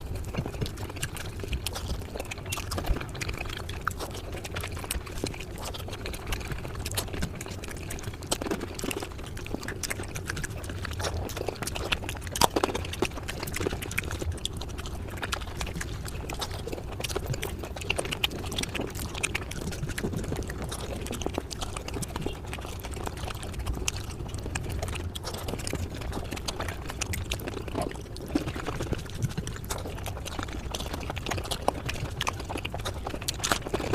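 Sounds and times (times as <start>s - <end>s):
sped-up chewing sounds: 0.0s - 33.9s.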